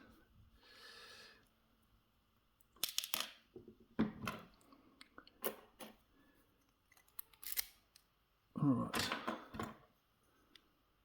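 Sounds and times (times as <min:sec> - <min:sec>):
padlock clicks and scrapes: 0:06.8 - 0:08.1.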